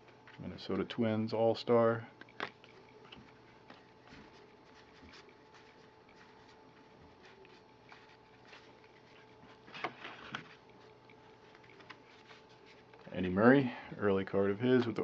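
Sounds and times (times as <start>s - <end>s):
faint steady hum: 0.0s - 15.0s
cards rustling and clicking: 7.2s - 13.1s.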